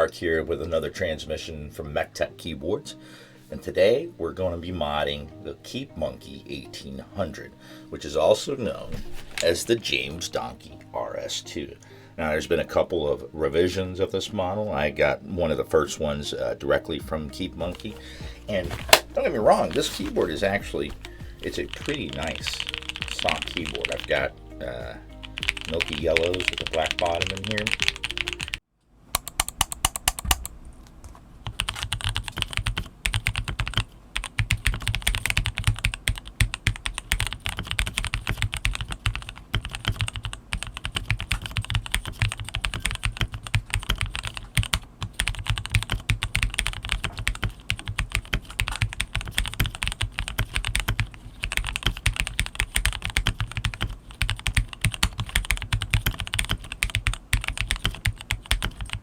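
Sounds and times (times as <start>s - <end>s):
mechanical keyboard typing: 18.8s - 28.6s, 29.2s - 30.6s, 31.4s - 59.0s.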